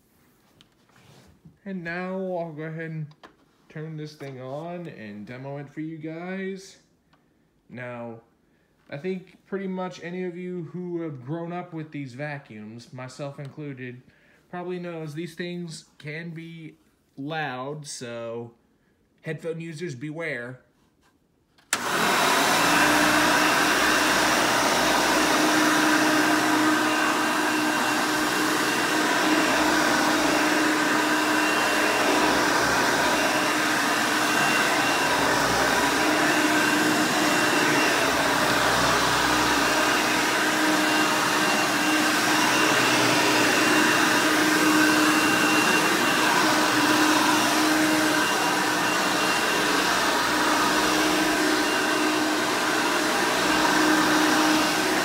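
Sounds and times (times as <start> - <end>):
vacuum cleaner motor whine: 21.7 - 55.0.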